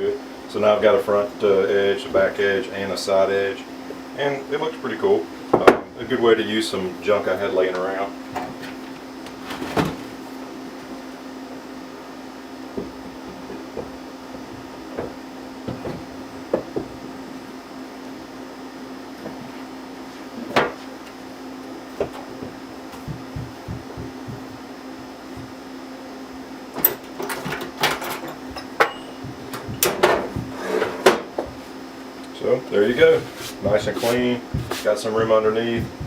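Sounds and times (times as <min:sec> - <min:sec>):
steady low hum: 0:00.0 - 0:36.0
objects knocking and clunking: 0:12.7 - 0:17.0, 0:26.8 - 0:31.6.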